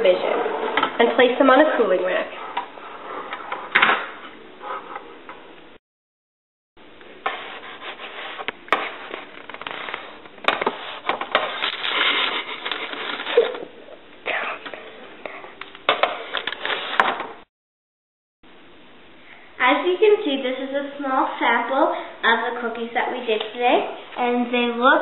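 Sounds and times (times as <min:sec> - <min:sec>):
cookies scraping on baking sheet: 0:07.2 - 0:13.6.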